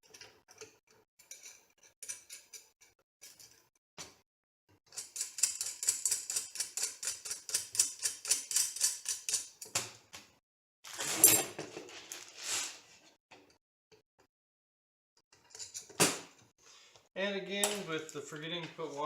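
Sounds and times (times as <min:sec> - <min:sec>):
parts rustling and scraping: 0:00.0 - 0:04.2, 0:10.9 - 0:13.2, 0:15.4 - 0:16.1.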